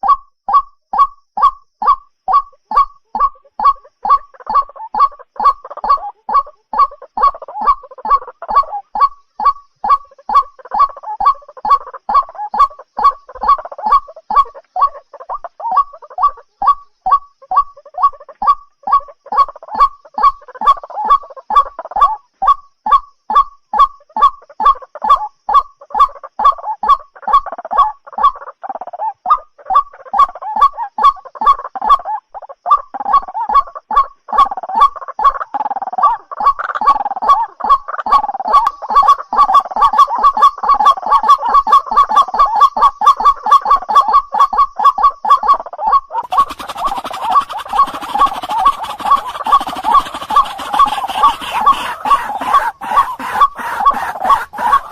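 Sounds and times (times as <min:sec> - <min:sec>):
bird calling rapid repeated notes: 0:00.0 - 0:22.0, 0:35.4 - 0:54.9.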